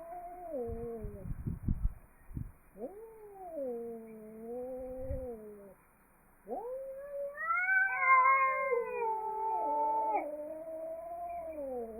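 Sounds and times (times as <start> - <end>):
cats yowling: 0.0 - 1.1, 6.5 - 11.9.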